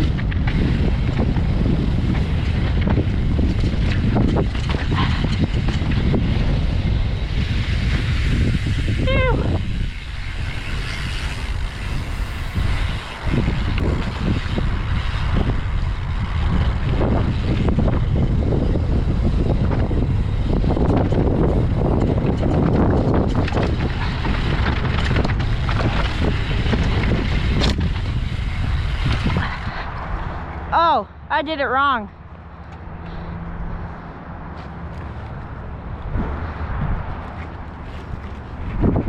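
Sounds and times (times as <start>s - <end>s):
bike rattling over rocks: 0.0s - 30.0s
wind buffeting microphone: 0.0s - 31.4s, 32.2s - 39.0s
mountain bike rumbling and clattering: 0.0s - 39.0s.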